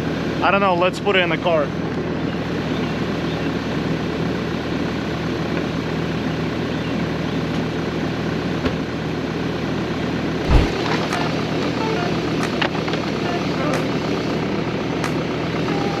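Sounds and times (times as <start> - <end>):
vehicle engine running: 9.8 - 16.0
low thump: 10.5 - 11.2.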